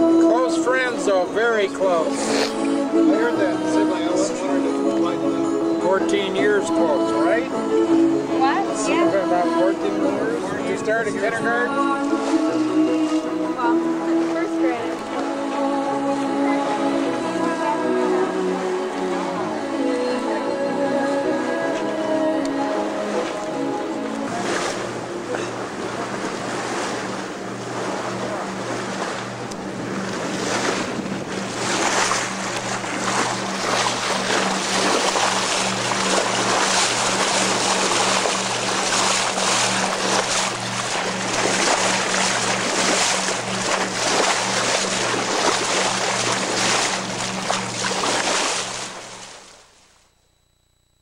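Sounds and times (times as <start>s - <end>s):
water rushing along boat hull: 0.0s - 50.1s
pulsing low hum: 0.0s - 51.0s
wind buffeting microphone: 25.8s - 48.4s.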